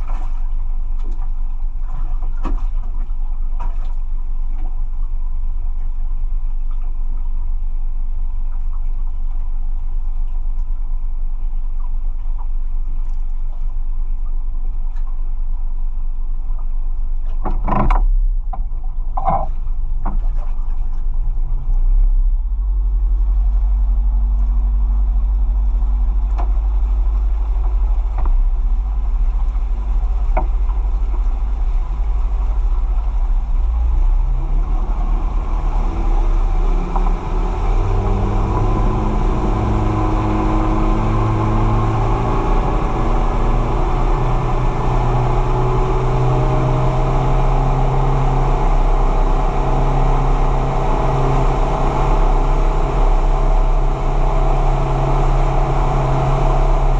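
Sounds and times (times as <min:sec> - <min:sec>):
boat engine running: 0:00.0 - 0:56.9.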